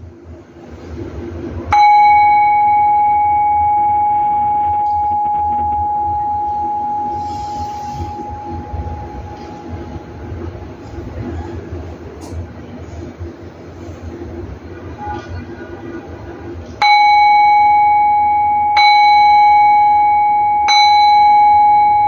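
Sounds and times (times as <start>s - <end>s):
low hum: 0.0s - 22.0s
bowl bell ringing: 1.7s - 11.8s, 16.8s - 22.0s.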